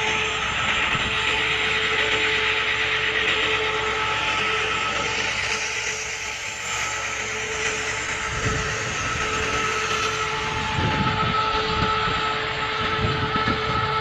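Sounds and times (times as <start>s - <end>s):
low rumbling: 0.0s - 14.0s
wire saw cutting concrete: 0.0s - 14.0s.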